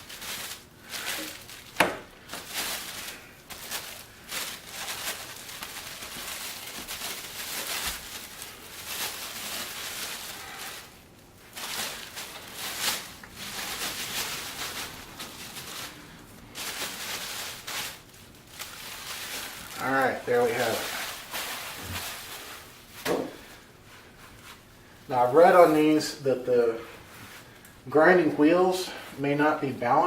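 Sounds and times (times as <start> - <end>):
packaging wrap rustling and crinkling: 0.0 - 28.9.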